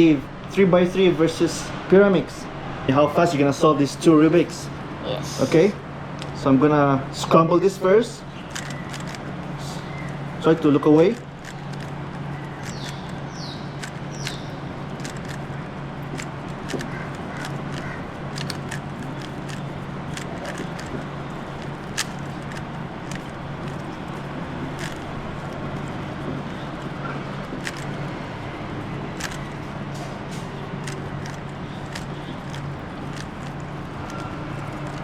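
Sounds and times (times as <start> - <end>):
steady low hum: 0.0 - 35.0
plastic cube layers clicking: 8.3 - 35.0.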